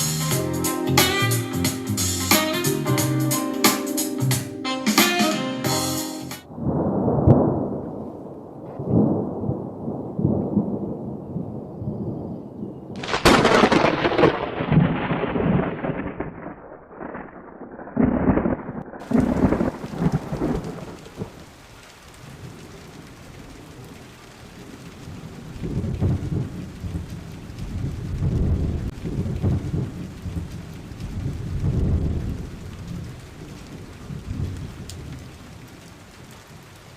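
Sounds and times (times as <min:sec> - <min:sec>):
steady rain: 0:00.0 - 0:11.5, 0:12.9 - 0:36.9
loud thunder crack: 0:06.4 - 0:08.2, 0:13.0 - 0:21.4, 0:31.0 - 0:33.1
rumbling thunder: 0:06.5 - 0:12.3, 0:12.9 - 0:21.5, 0:24.6 - 0:35.8.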